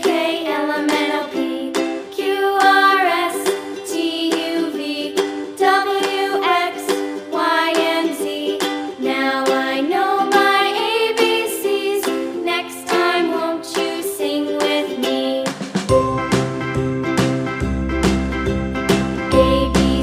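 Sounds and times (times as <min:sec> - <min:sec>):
cheerful plucked string music: 0:00.0 - 0:20.0
high gliding melody: 0:15.9 - 0:17.9.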